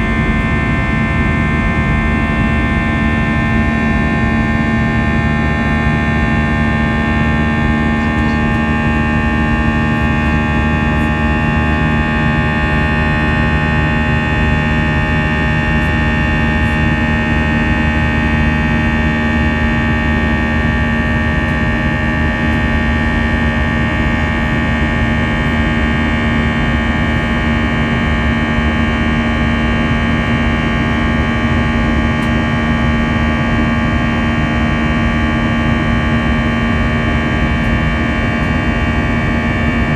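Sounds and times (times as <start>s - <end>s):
jet engines heard inside cabin: 0.0s - 39.9s.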